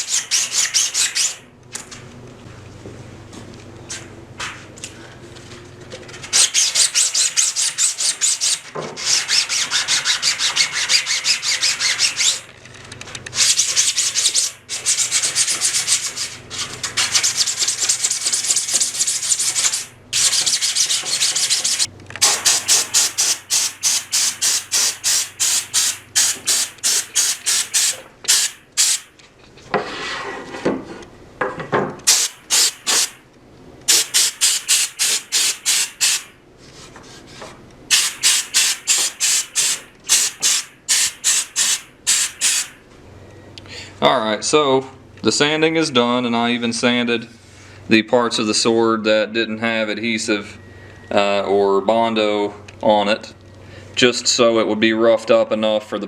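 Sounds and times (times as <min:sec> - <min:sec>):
sandpaper rubbing on plastic: 0:00.0 - 0:01.4, 0:06.4 - 0:12.4, 0:13.4 - 0:29.0.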